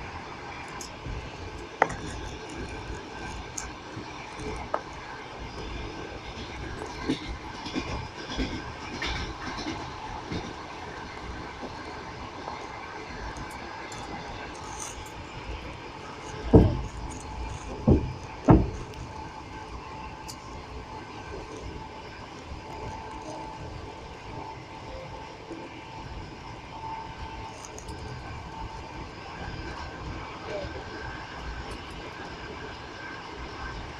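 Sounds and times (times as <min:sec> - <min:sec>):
train rumbling: 0:00.0 - 0:33.9
train wheels clacking over rail joints: 0:00.6 - 0:24.5.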